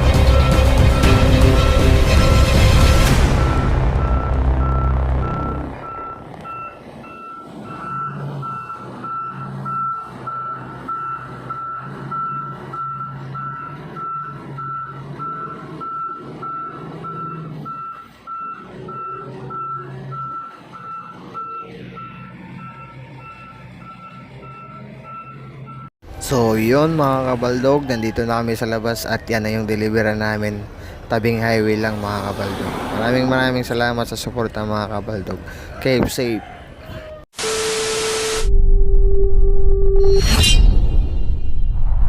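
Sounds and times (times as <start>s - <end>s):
reversing alarm beeping: 0.0s - 25.9s
diesel engine running: 0.0s - 27.3s.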